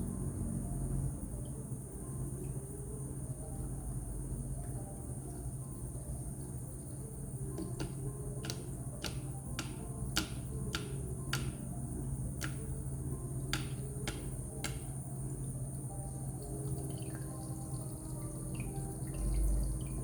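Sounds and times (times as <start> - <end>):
steady low hum: 0.0 - 20.0
water drops dripping: 7.6 - 11.7, 12.4 - 12.8, 13.4 - 15.0, 16.4 - 20.0.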